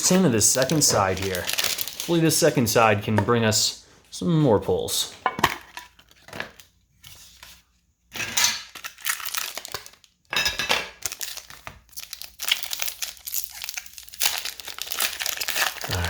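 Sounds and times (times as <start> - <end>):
foil wrappers crinkling and tearing: 0.0 - 2.9, 8.4 - 10.3, 11.0 - 16.0.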